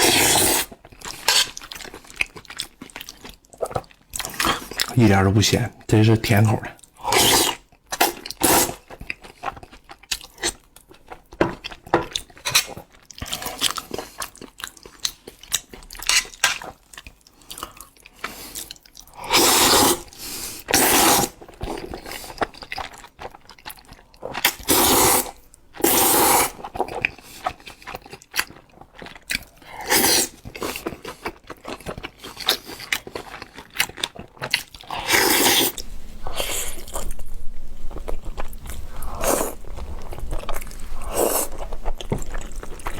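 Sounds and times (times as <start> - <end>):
loud noodle slurps: 0.0 - 1.5, 7.0 - 8.8, 19.2 - 21.4, 24.4 - 26.7, 29.8 - 30.8, 34.8 - 42.9
wet chewing and mouth clicks: 0.0 - 5.0, 6.8 - 42.9.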